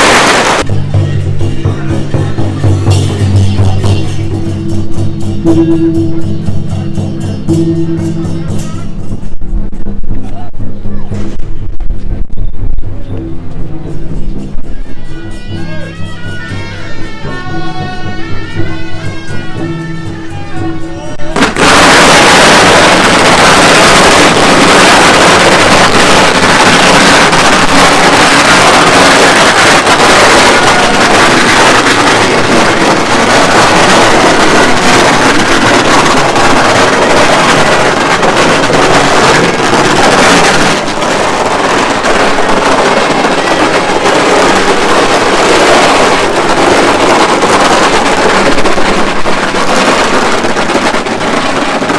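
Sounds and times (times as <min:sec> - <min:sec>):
shrill procession music: 0:00.0 - 0:09.8, 0:12.9 - 0:51.9
firecrackers crackling: 0:00.0 - 0:51.9.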